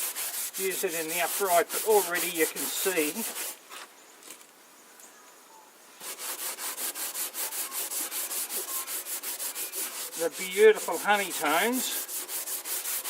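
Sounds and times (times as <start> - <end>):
steel wool scrubbing wood: 0.0 - 3.6, 6.0 - 13.0.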